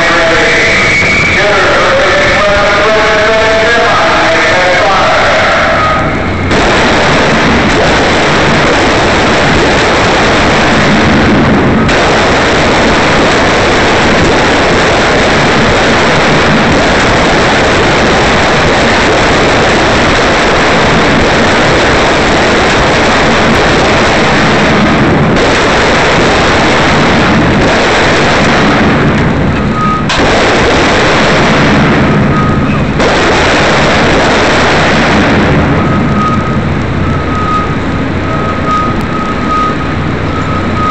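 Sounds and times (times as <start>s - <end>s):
rifles firing: 6.4s - 36.3s.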